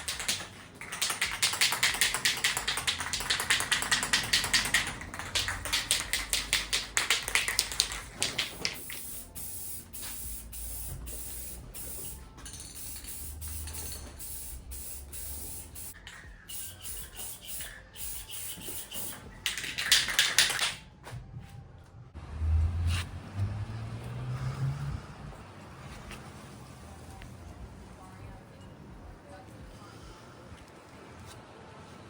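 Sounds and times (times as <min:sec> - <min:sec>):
aerosol can rattling clicks: 0:00.1 - 0:09.2
aerosol spray hiss: 0:08.6 - 0:12.2, 0:12.8 - 0:19.2.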